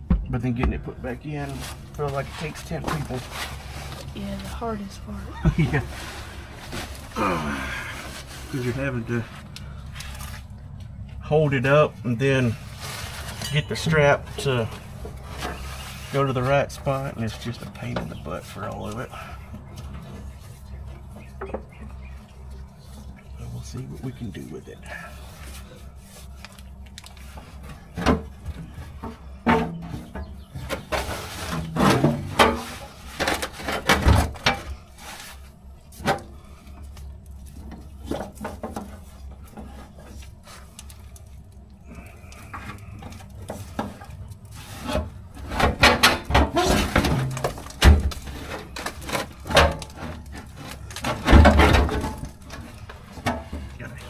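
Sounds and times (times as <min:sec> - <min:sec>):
knocks and clunks: 0:00.0 - 0:03.6, 0:27.3 - 0:34.8, 0:44.8 - 0:54.0
scraping and rubbing: 0:01.3 - 0:11.1, 0:12.0 - 0:54.0.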